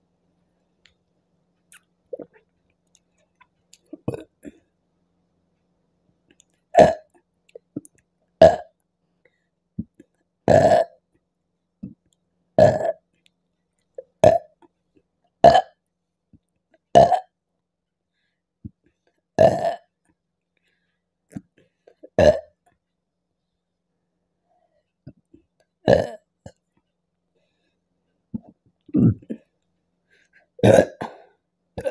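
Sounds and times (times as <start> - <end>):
woman burping loudly: 4.0 - 4.6, 6.8 - 7.1, 10.5 - 11.0, 19.4 - 19.9, 25.8 - 26.2, 30.6 - 31.2.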